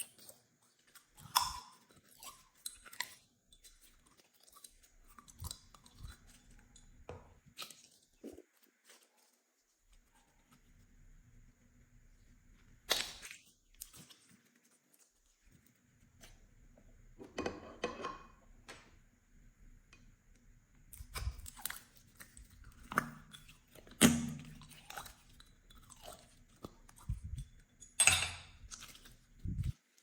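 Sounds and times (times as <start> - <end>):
slime squelching and popping: 12.8 - 14.3.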